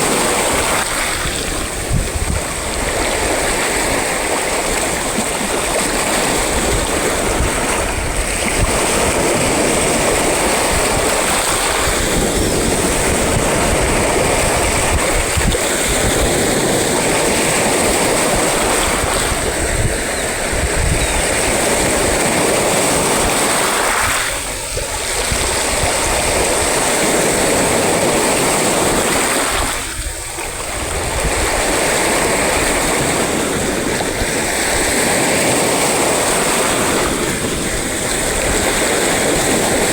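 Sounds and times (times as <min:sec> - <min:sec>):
heavy surf breaking: 0:00.0 - 0:39.9.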